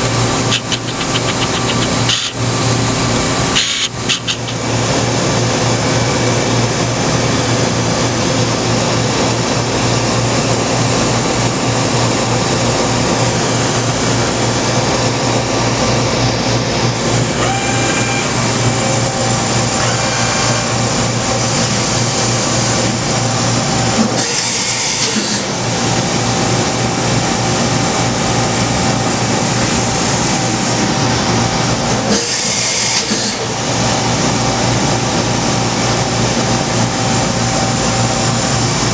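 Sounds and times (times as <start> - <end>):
machine hum with steady tones: 0.0 - 38.9
high hiss bursts: 0.5 - 2.4, 3.6 - 4.7.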